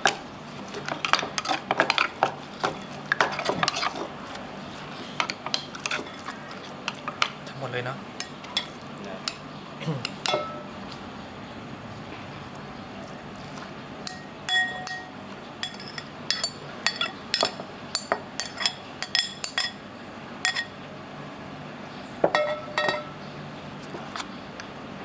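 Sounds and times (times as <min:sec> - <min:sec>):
spoon clinking against a dish: 0:08.2 - 0:10.7, 0:14.0 - 0:19.8, 0:20.4 - 0:20.8, 0:22.3 - 0:23.2.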